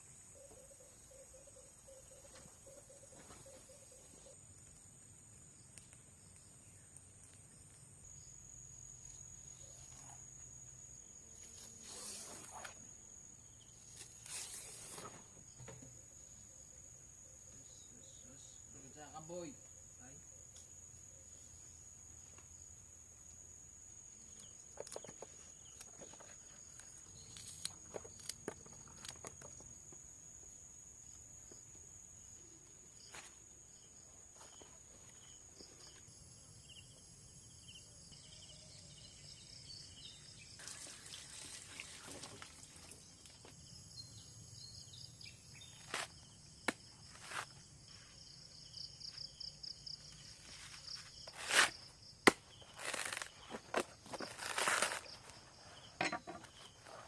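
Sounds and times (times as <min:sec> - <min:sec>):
insect pulsing chirp: 0:00.0 - 0:57.0
insects trilling: 0:00.0 - 0:57.0
rustle: 0:01.6 - 0:16.6, 0:38.1 - 0:44.2, 0:45.0 - 0:46.4, 0:49.0 - 0:57.0.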